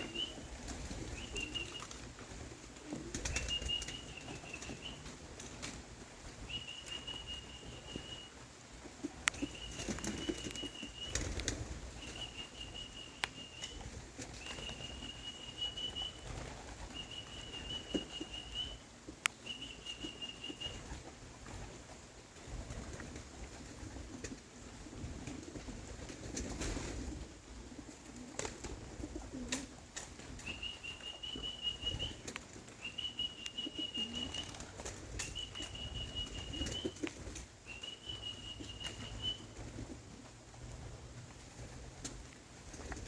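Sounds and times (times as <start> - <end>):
pigeons flapping wings: 0.0 - 18.8, 19.4 - 43.0.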